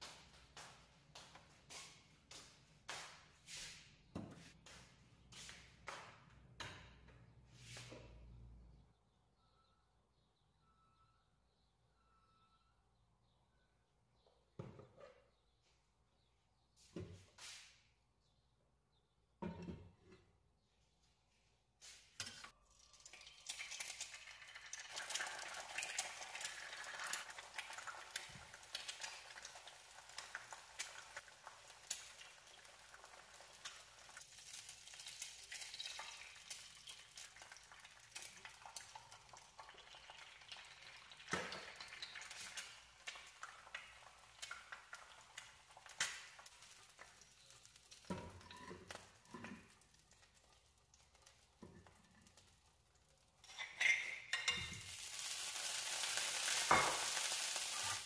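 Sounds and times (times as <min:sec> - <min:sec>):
food sizzling in a pan: 0:22.7 - 0:53.5, 0:54.2 - 0:58.0.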